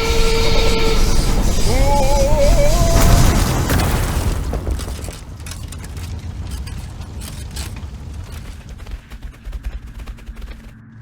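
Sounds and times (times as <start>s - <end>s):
wavering whistle-like tone: 0.0s - 3.5s.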